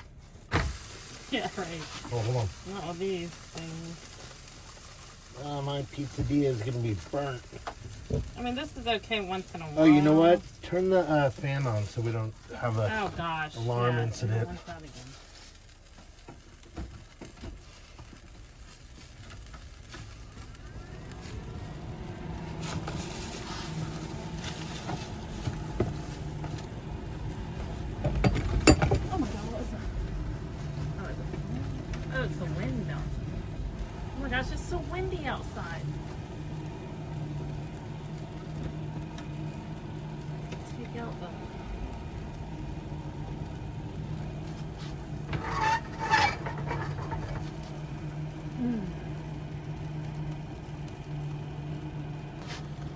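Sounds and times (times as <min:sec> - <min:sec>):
ventilation fan humming: 0:00.0 - 0:52.9
wind rumbling against van: 0:15.0 - 0:52.9.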